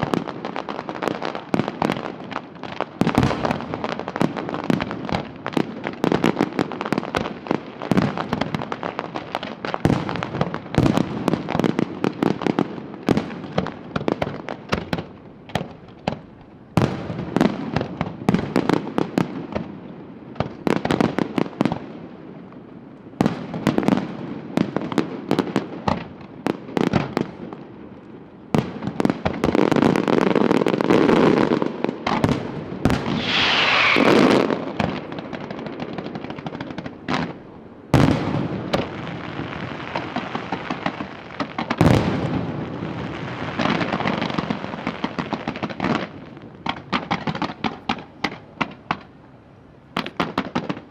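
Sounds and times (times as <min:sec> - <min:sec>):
fireworks bangs and crackles: 0:00.0 - 0:50.9
falling firework whistle: 0:32.8 - 0:34.6.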